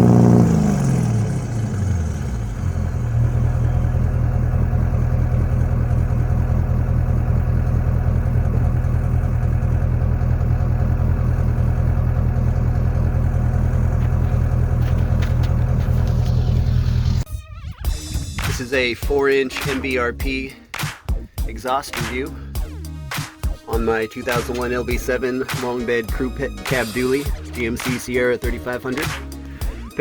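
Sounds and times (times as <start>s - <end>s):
diesel engine idling: 0.0s - 17.2s.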